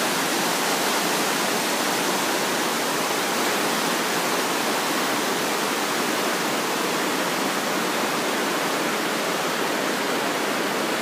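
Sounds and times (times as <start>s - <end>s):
mountain river rushing: 0.0s - 11.0s.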